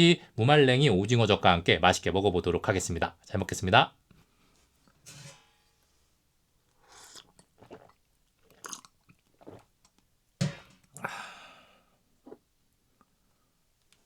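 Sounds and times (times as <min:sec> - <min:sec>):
biting and chewing: 0:06.8 - 0:10.0.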